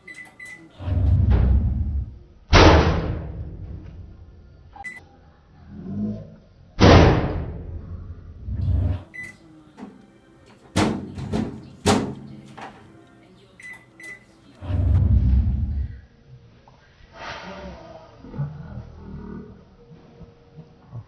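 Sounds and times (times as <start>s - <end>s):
microwave beeping: 0.0s - 0.7s, 9.1s - 9.4s, 13.6s - 14.3s
low rumbling thumps: 0.9s - 4.3s, 14.7s - 16.0s
loud bang: 1.0s - 4.0s, 6.8s - 8.0s.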